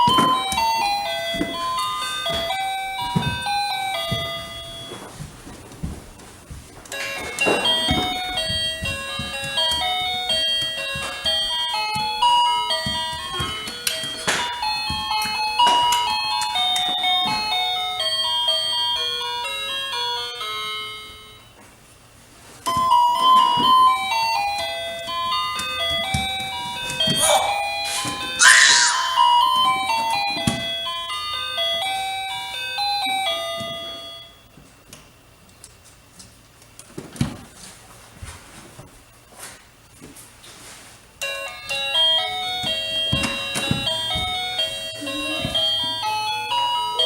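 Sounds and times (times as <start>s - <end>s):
electronic doorbell chiming melody: 0.0s - 5.2s, 6.9s - 21.6s, 22.6s - 34.5s, 41.2s - 47.0s.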